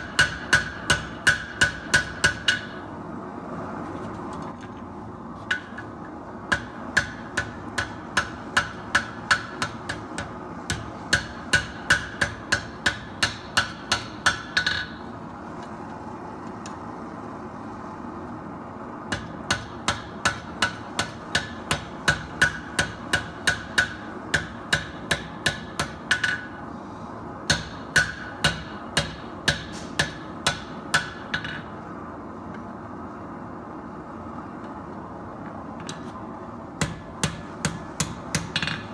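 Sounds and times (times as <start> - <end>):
hammer striking steel on anvil: 0.0 - 2.8, 6.5 - 15.0, 19.1 - 26.6, 27.5 - 31.7, 36.8 - 38.9.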